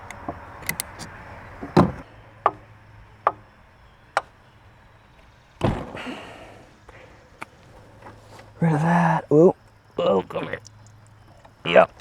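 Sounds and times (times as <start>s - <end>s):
sharp clicks of tools: 0.0s - 2.0s.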